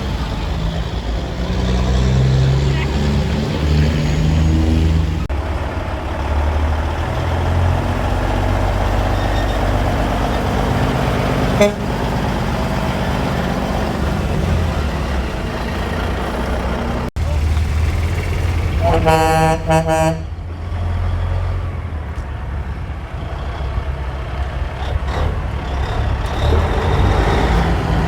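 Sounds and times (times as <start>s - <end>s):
truck engine rumbling: 0.0s - 28.0s
truck horn toot: 11.4s - 12.1s, 18.8s - 20.5s.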